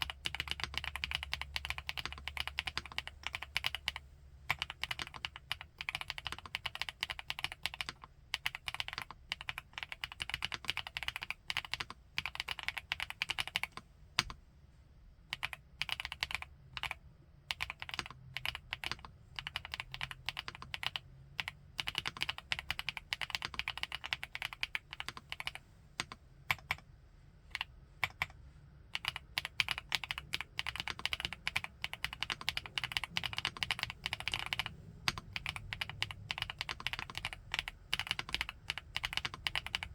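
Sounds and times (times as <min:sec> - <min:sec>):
mechanical keyboard typing: 0:00.0 - 0:14.4, 0:15.3 - 0:26.8, 0:27.5 - 0:39.9.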